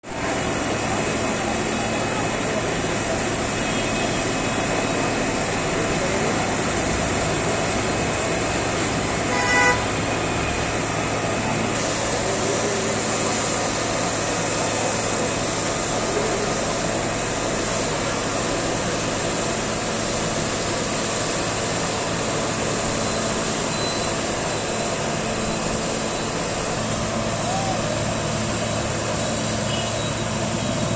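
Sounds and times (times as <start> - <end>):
vehicle engine and road noise: 0.0 - 30.9
short horn toot: 9.3 - 9.9.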